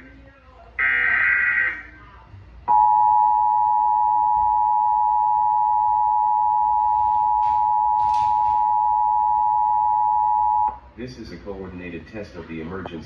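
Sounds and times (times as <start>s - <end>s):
two-tone alert signal drone: 2.7s - 10.8s.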